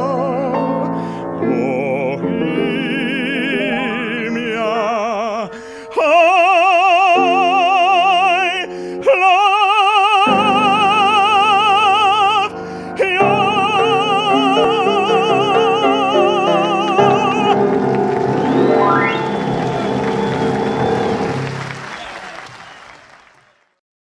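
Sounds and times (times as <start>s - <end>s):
operatic solo singing: 0.0s - 21.7s
sustained instrumental accompaniment: 13.0s - 21.8s.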